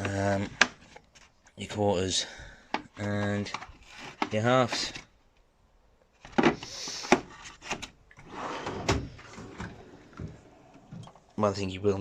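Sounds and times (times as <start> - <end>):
metal drawer sliding on runners: 8.2 - 11.2
drawer knocks and clunks: 8.2 - 11.3.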